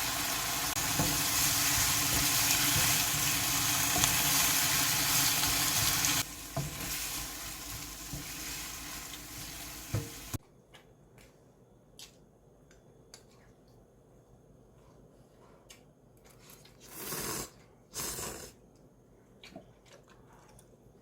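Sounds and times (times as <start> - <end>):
food sizzling in a pan: 0.0 - 10.4.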